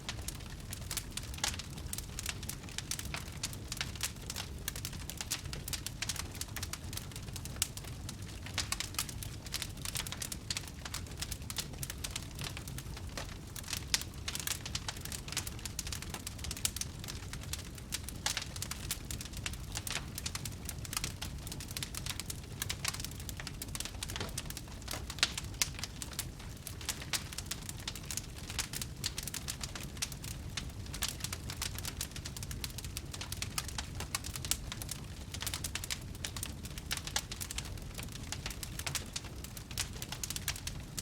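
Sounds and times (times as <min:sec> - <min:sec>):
fire crackling: 0:00.0 - 0:41.0.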